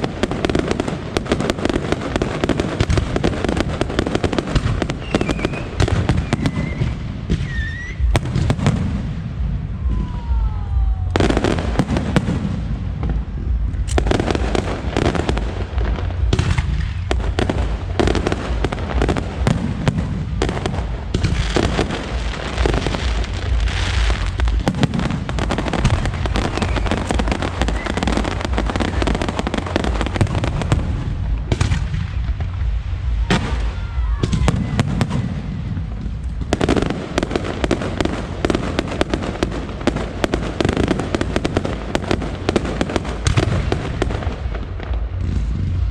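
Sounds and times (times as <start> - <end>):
fireworks bangs and crackling: 0.0 - 45.9
firework whistles gliding in pitch: 4.9 - 8.2, 26.3 - 29.2.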